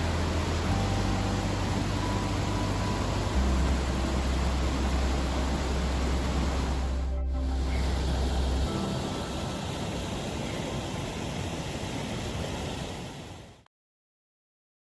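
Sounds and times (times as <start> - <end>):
deep rumble: 0.0 - 8.9
river and waterfalls rushing: 0.0 - 13.6.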